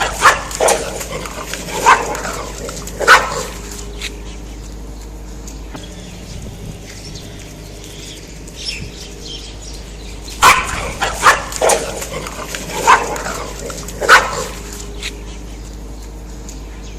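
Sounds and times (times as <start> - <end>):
dog barking: 0.0 - 3.7, 10.4 - 14.7
steady low hum: 0.0 - 16.9.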